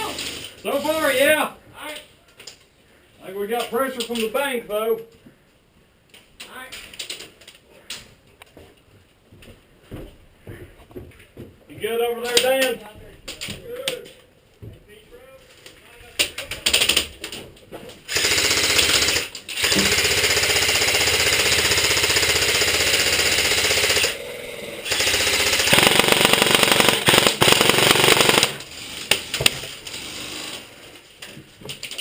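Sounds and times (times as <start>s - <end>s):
airsoft gun full-auto bursts: 18.1s - 28.7s.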